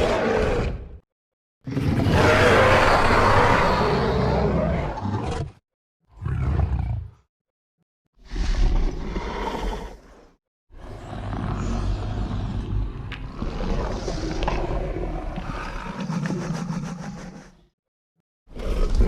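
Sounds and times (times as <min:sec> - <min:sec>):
creature roar: 0:00.0 - 0:01.0, 0:01.7 - 0:05.6
deep rumbling growl: 0:10.8 - 0:17.5.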